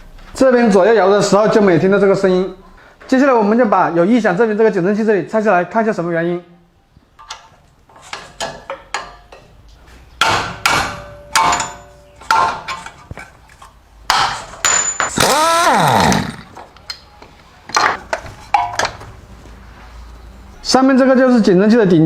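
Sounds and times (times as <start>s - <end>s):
metal tools clanking: 11.3s - 13.8s, 14.4s - 15.3s
power tool whine: 15.1s - 16.5s.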